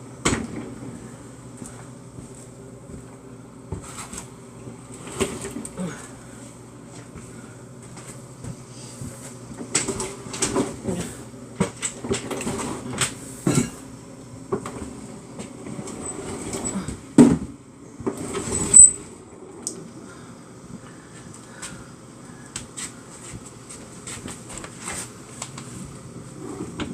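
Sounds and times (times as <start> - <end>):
low steady hum: 0.0 - 26.9
refrigerator scraping across floor: 4.9 - 5.6, 12.0 - 13.4, 14.6 - 16.9, 18.1 - 19.6, 26.2 - 26.9.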